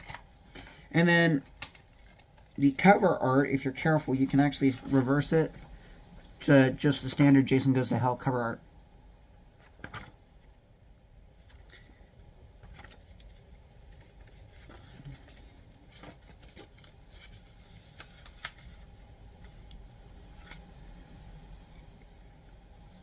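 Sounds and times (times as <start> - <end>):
plastic disc case handling: 0.0 - 0.8, 1.4 - 2.6, 9.6 - 10.2, 12.6 - 19.6
paper rustling: 0.0 - 5.8, 9.6 - 10.5, 11.4 - 20.9.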